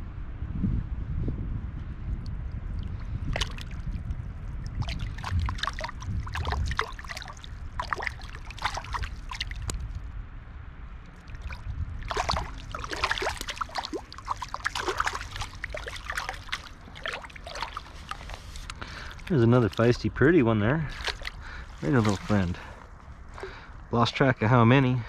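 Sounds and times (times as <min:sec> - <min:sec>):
fish splashing in water: 0:02.8 - 0:10.0, 0:11.2 - 0:20.0, 0:20.9 - 0:23.7
river rushing: 0:11.3 - 0:19.4.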